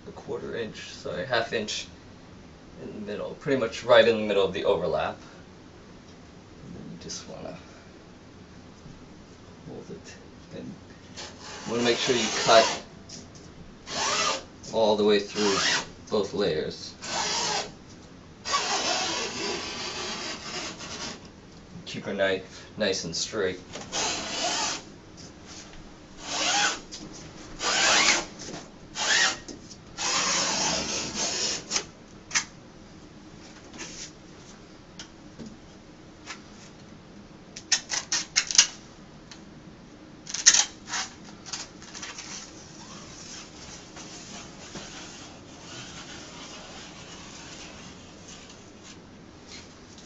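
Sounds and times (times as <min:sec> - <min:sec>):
faint rubbing: 0:11.2 - 0:12.9, 0:18.5 - 0:21.2, 0:41.9 - 0:49.7.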